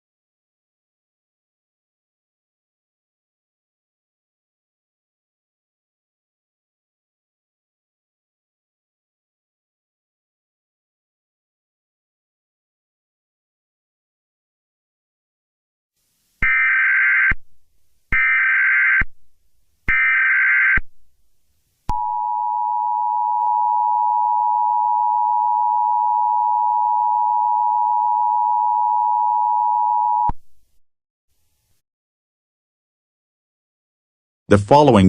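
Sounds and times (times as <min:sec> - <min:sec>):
harsh dual-tone alert: 0:16.4 - 0:17.4, 0:19.9 - 0:20.8.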